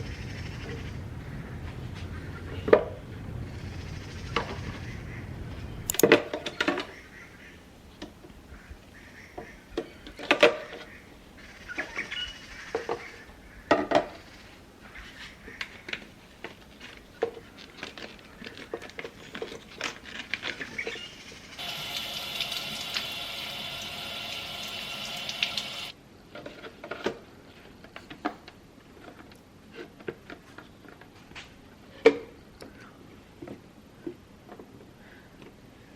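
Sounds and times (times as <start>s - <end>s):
steady hiss: 21.5s - 26.0s.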